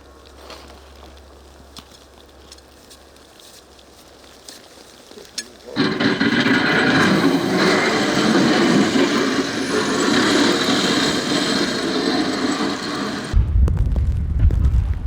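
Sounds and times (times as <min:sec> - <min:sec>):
motor running: 0:05.8 - 0:13.4.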